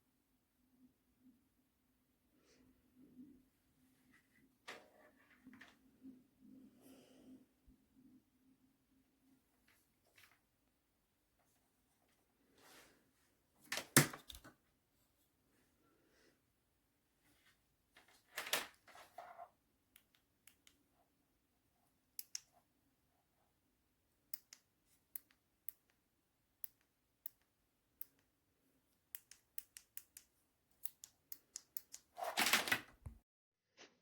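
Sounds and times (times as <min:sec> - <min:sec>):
sharp clicks: 0:22.2 - 0:22.5, 0:29.1 - 0:32.1.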